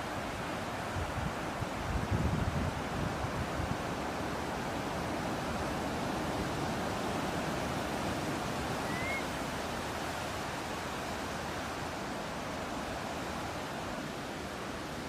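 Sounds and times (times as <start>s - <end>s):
ocean surf: 2.8s - 15.0s
rising bird chirp: 8.8s - 9.3s.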